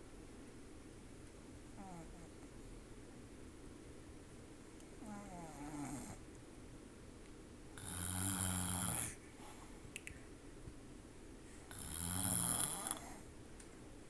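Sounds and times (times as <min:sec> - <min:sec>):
snoring: 0:05.0 - 0:06.2, 0:07.8 - 0:09.2, 0:11.7 - 0:13.3.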